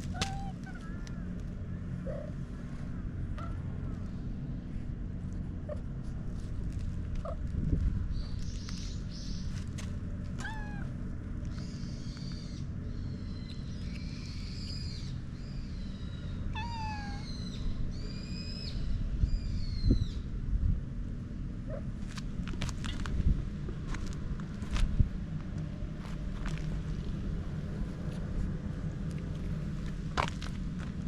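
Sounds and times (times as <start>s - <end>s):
low rumbling noise: 0.0s - 31.0s
cat meowing: 0.1s - 1.1s, 10.4s - 10.9s, 16.5s - 17.3s.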